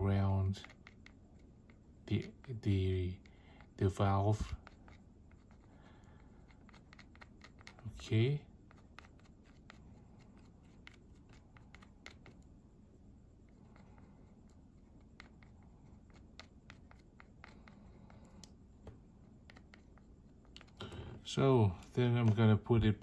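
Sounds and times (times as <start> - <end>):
light scratching: 0.0 - 12.5.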